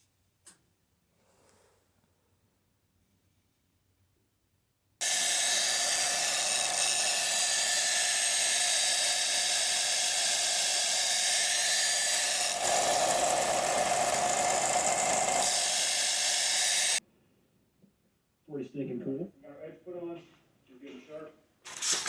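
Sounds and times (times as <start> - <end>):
power grinder grinding steel: 5.0 - 17.0.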